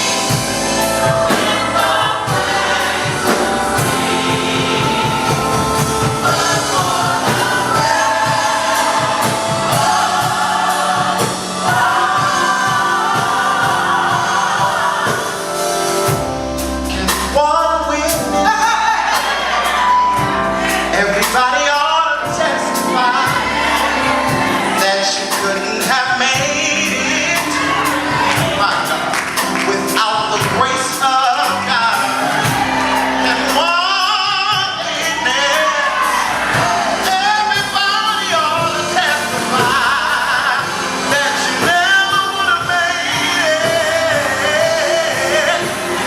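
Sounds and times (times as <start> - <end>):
gospel choir with band: 0.0 - 46.0
solo voice singing: 33.2 - 46.0.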